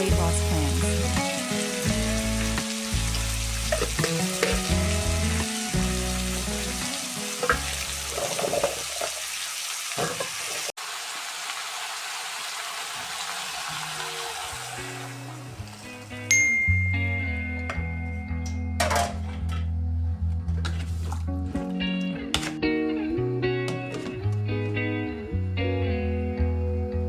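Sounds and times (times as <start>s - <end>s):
vegetables sizzling in a pot: 0.0s - 16.3s, 23.7s - 24.2s
stirring clicks: 23.6s - 24.8s.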